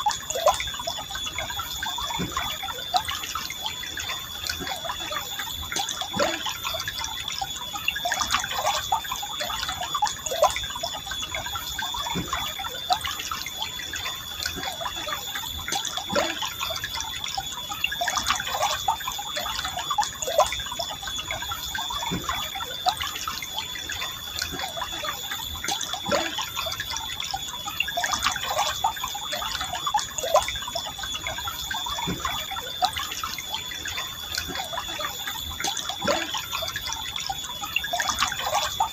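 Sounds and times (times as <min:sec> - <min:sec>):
stream flowing and gurgling: 0:00.0 - 0:38.9
thin high tone: 0:00.0 - 0:38.9.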